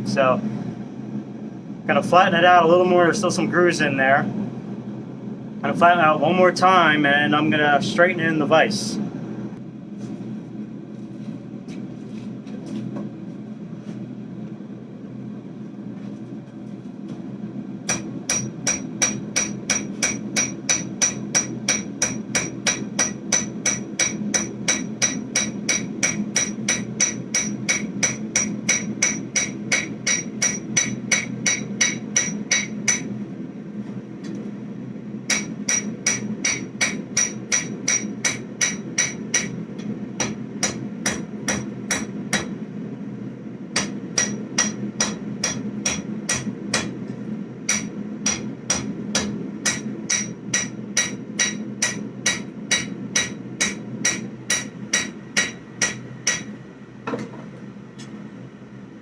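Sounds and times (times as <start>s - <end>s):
hammer striking steel on anvil: 17.9s - 33.1s, 35.3s - 42.6s, 43.8s - 47.0s, 47.7s - 57.3s.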